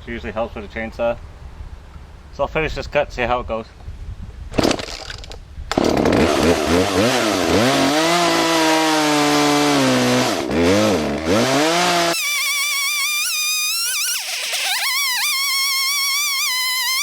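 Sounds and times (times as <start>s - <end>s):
chainsaw cutting through log: 5.7s - 17.0s.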